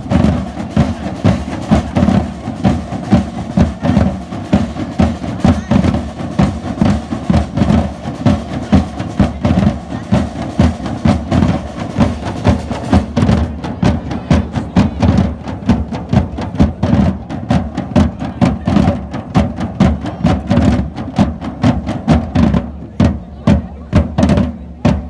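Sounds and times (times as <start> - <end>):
drums and percussion: 0.0 - 25.0.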